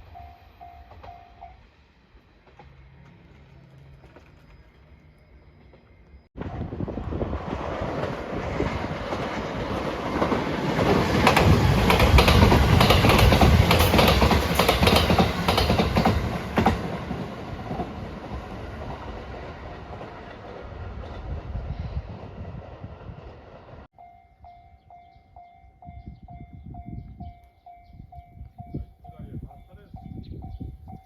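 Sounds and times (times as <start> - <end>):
train wheels clacking over rails: 7.4 - 21.4.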